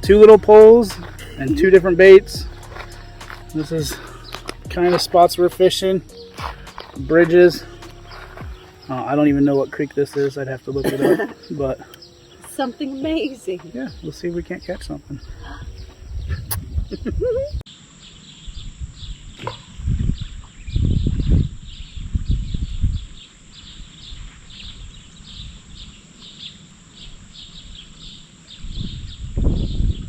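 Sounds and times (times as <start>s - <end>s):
low rumbling: 0.0s - 8.7s.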